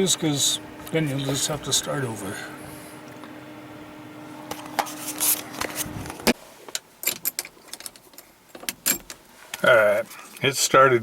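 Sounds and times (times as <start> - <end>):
steady hum: 0.0 - 6.8.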